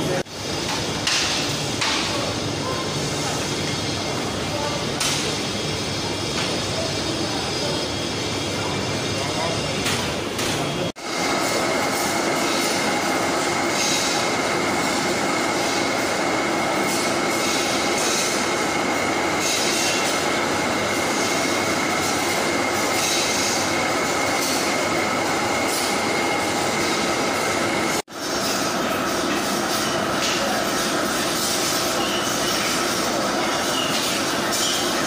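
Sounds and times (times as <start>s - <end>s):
loud machinery noise: 0.0s - 35.0s.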